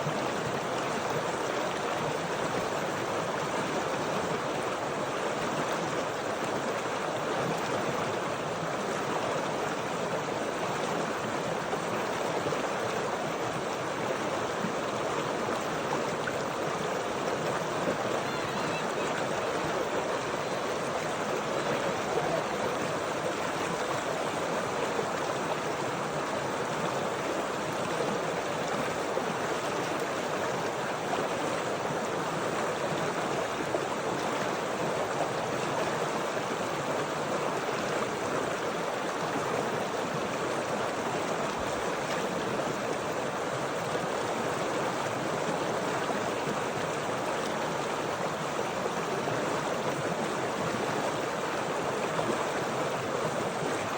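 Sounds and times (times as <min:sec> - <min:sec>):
stream water flowing over rocks: 0:00.0 - 0:53.9.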